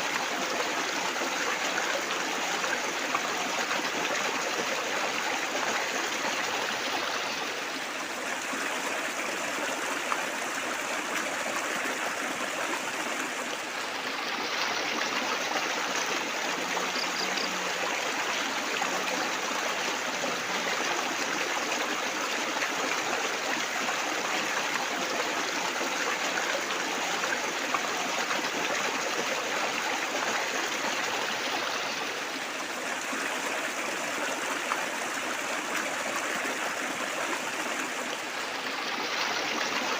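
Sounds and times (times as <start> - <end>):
water trickling and splashing: 0.0 - 39.9.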